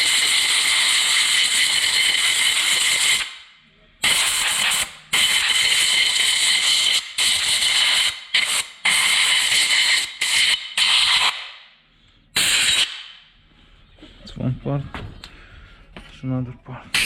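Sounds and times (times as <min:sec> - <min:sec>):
compressed air blow gun bursts: 0:04.0 - 0:11.5, 0:12.4 - 0:13.0.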